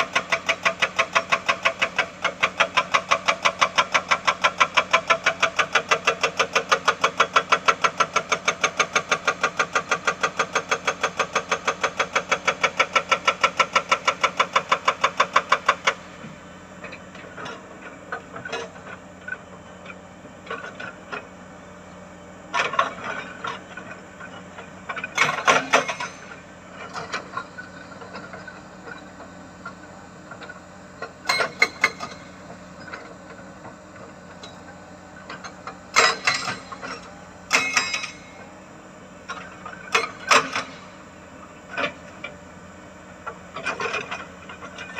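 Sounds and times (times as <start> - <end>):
excavator engine running: 0.0 - 44.9
hydraulic breaker hammering rock: 24.8 - 29.8, 31.0 - 38.6, 39.2 - 41.0
metal clanks and knocks: 35.3 - 38.5.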